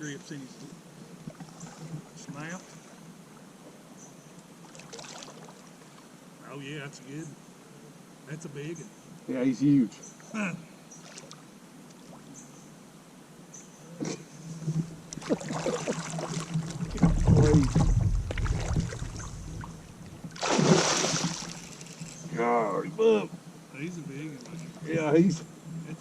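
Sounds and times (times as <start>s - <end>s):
water knocking against kayak hull: 14.8s - 20.4s
fish thrashing in water: 15.1s - 22.2s
loud splash: 15.2s - 21.9s.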